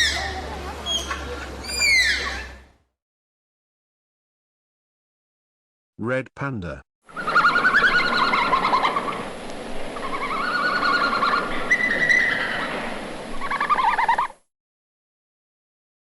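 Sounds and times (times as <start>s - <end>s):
red panda twittering calls: 0.0s - 2.6s, 7.1s - 9.2s, 10.0s - 12.7s, 13.4s - 14.4s.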